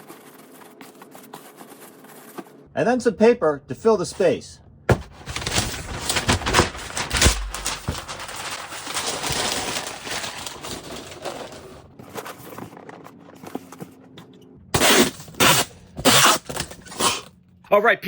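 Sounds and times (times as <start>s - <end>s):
packing paper crumpling: 4.9s - 13.8s
handling noises: 4.9s - 17.3s.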